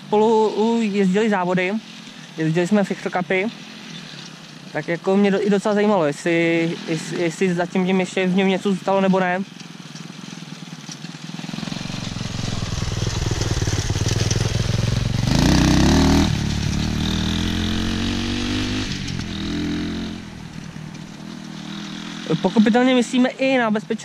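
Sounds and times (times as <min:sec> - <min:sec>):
dirt bike engine passing: 0:00.2 - 0:23.8.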